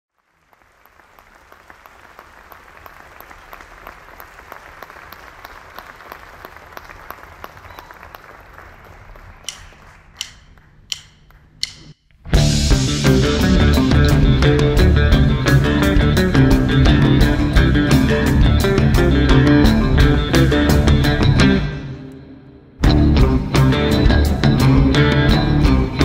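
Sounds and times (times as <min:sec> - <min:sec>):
audience applauding: 0:00.1 - 0:11.5
sharp clicks: 0:09.4 - 0:12.0
electric band playing: 0:12.3 - 0:26.0.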